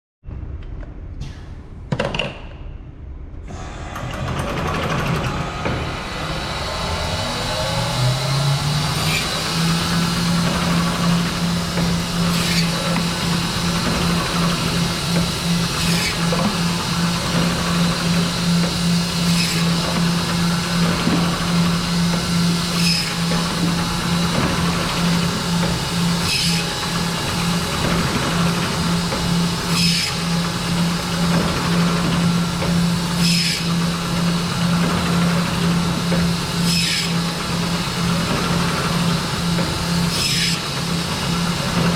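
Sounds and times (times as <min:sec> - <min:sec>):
band saw motor hum: 0:03.5 - 0:41.9
saw cutting meat: 0:05.4 - 0:34.8, 0:35.9 - 0:38.1, 0:39.2 - 0:41.7.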